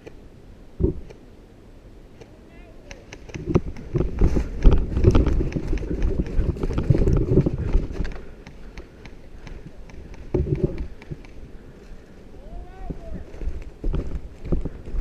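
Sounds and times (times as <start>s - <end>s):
sharp clicks: 0.0s - 0.2s, 2.2s - 11.4s
heavy running footsteps: 3.3s - 12.0s.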